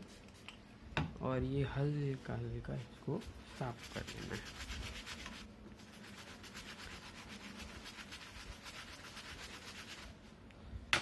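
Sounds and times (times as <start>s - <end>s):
small brush scrubbing: 2.8s - 10.2s.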